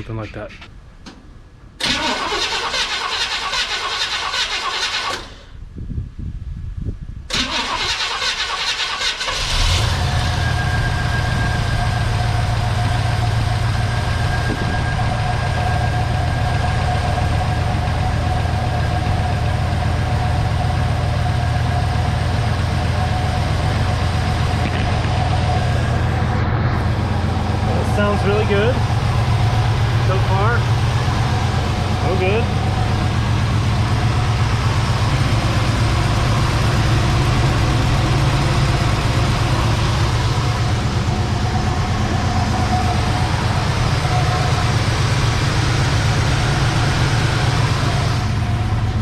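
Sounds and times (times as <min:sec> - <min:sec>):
engine starter cranking: 0:01.8 - 0:05.6, 0:07.3 - 0:10.1
car engine idling: 0:07.3 - 0:49.0.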